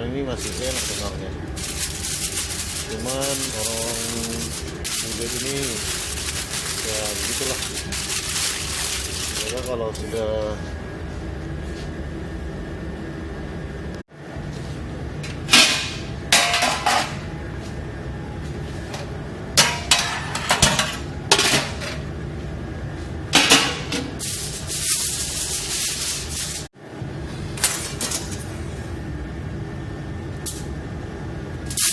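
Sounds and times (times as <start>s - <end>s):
steady background hum: 0.0s - 31.9s
rustling: 0.4s - 10.2s
dishes clattering: 15.2s - 17.3s, 18.9s - 22.1s, 23.4s - 24.2s.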